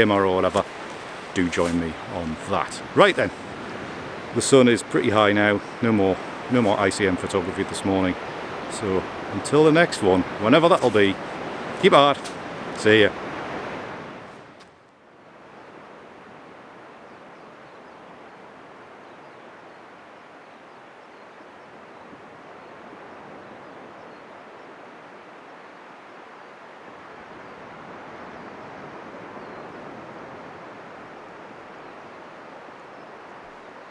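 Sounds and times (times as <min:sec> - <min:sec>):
surf breaking on beach: 0:00.0 - 0:14.6.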